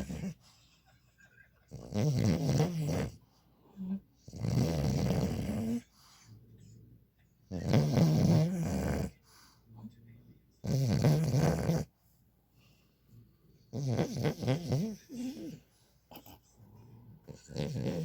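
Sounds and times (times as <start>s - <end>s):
dog snoring: 0.0s - 0.5s, 1.7s - 3.2s, 4.2s - 6.2s, 7.5s - 9.4s, 10.6s - 11.9s, 13.7s - 18.0s
quiet dog breathing: 0.0s - 1.7s, 2.5s - 18.0s.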